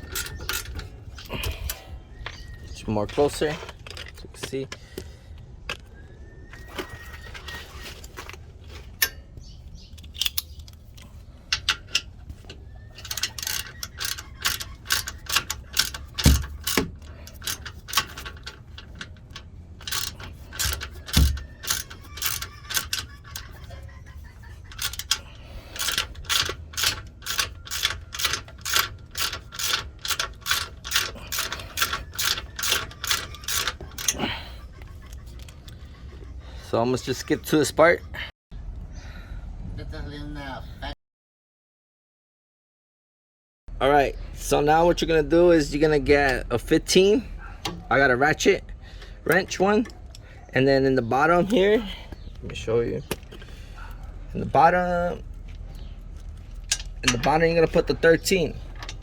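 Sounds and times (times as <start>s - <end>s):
ratchet wrench clicking: 0.0s - 1.8s, 13.0s - 23.8s, 24.7s - 34.2s.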